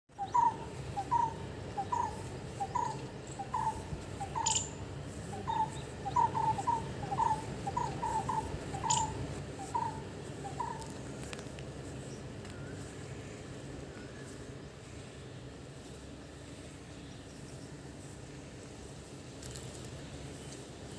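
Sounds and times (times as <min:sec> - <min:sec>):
sharp high chirps: 0:00.2 - 0:04.8, 0:05.4 - 0:10.8
animal calling: 0:00.2 - 0:11.0.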